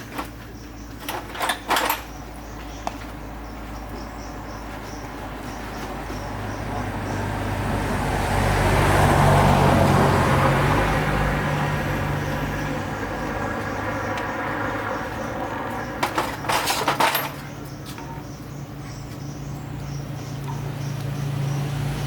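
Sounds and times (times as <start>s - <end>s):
engine humming: 0.0s - 22.0s.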